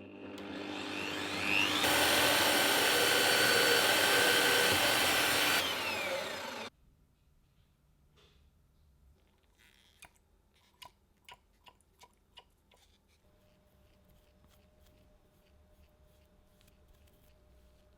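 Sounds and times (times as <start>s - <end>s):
power tool motor whirring: 0.0s - 6.7s.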